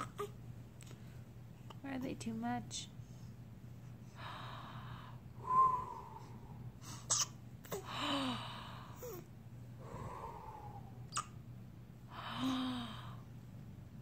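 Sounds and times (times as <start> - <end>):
noisy breaths: 3.0 - 7.1, 7.7 - 11.1, 12.0 - 13.4.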